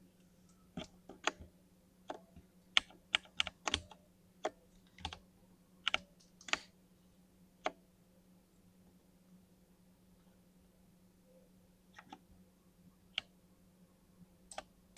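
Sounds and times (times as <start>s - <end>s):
mechanical keyboard keystrokes: 2.8s - 5.2s.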